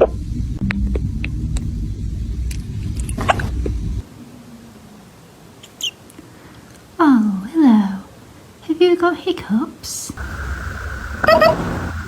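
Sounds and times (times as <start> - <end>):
steady low rumble: 0.0 - 4.1, 10.2 - 12.0.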